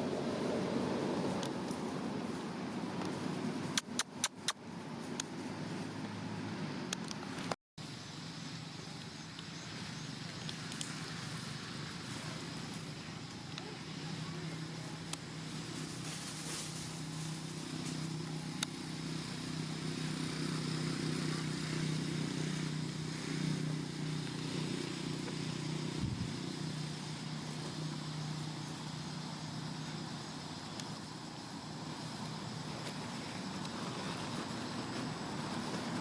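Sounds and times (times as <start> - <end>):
engine humming: 0.0 - 36.0.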